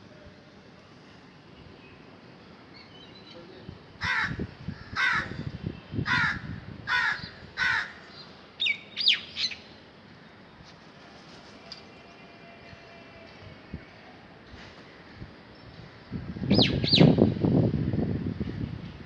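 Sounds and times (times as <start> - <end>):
crow cawing: 4.0 - 5.5, 6.1 - 8.1.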